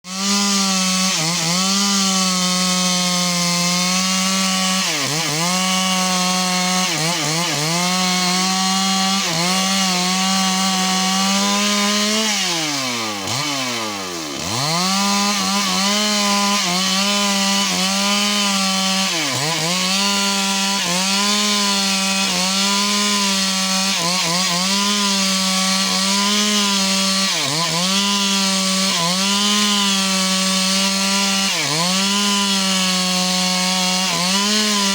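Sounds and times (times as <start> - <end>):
chainsaw cutting wood: 0.0 - 34.9.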